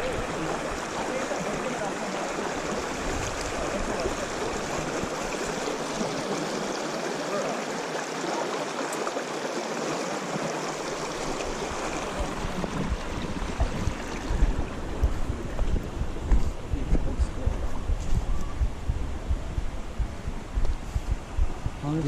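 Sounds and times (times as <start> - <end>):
river water rushing: 0.0 - 15.6.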